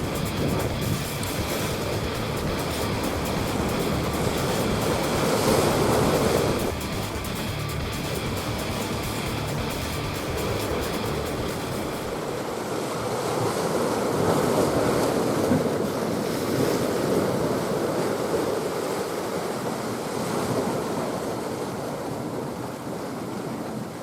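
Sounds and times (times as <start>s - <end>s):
sea waves washing: 0.0s - 24.0s
wind on microphone: 0.0s - 24.0s.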